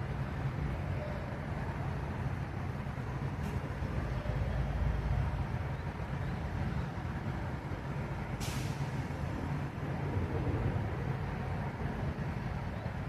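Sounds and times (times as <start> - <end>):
diesel engine rumbling: 0.0 - 13.0
air brake hiss: 8.4 - 9.2.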